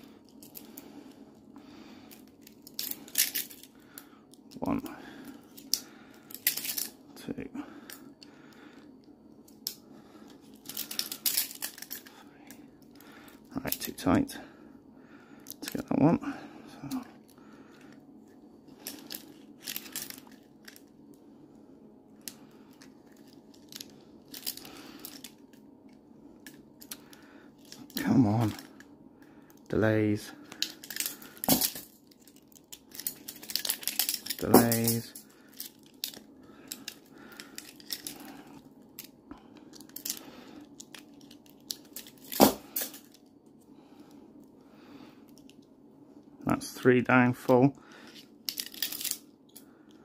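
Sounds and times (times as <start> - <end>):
handcuffs clicking and rattling: 2.1 - 7.0, 10.4 - 13.9, 18.7 - 20.9, 22.2 - 25.6, 26.4 - 28.9, 30.4 - 43.3, 48.0 - 50.0.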